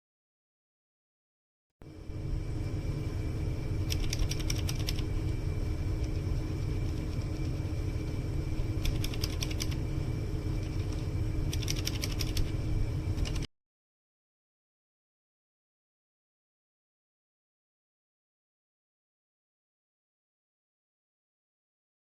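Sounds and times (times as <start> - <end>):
steady low hum: 1.8 - 13.5
mechanical keyboard typing: 3.9 - 5.1, 8.8 - 9.8, 11.5 - 12.6, 13.2 - 13.5.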